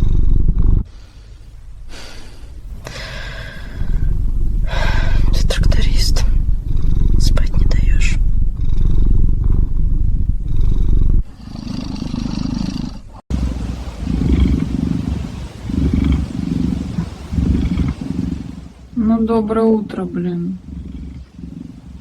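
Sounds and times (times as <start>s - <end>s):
cat snoring loudly: 0.0s - 0.9s, 6.3s - 19.0s, 20.2s - 22.0s.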